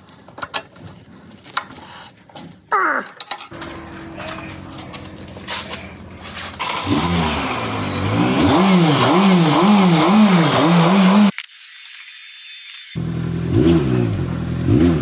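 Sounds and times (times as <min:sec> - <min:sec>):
car engine revving: 0:06.6 - 0:11.3, 0:13.0 - 0:15.0.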